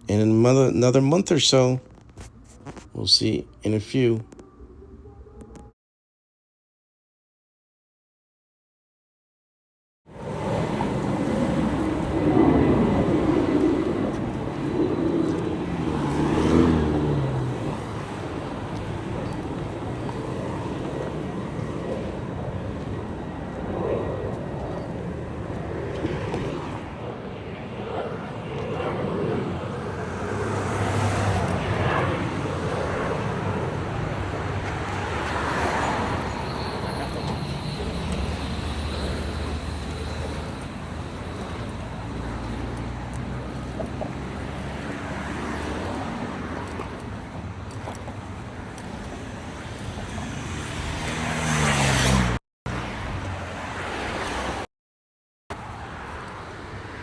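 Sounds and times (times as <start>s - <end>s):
road traffic noise: 10.1s - 54.7s, 55.5s - 57.0s
engine rising in pitch: 10.2s - 19.4s.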